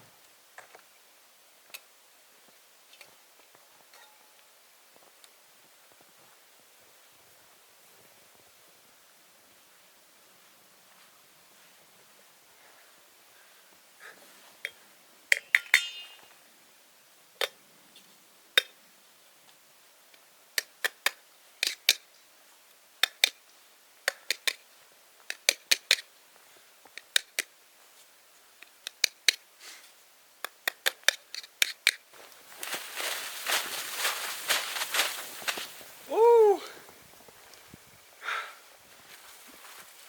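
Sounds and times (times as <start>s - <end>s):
short ringing clink: 15.4s - 16.4s
small hard objects clicking: 24.1s - 24.6s, 30.4s - 32.0s.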